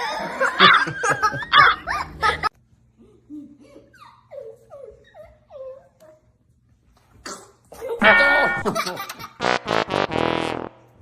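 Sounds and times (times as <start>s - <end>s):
people laughing loudly: 0.0s - 2.5s, 8.0s - 9.4s.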